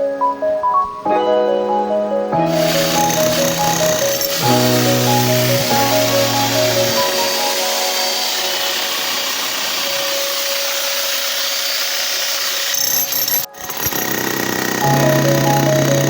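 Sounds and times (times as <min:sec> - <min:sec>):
power saw cutting concrete: 0:02.5 - 0:16.0.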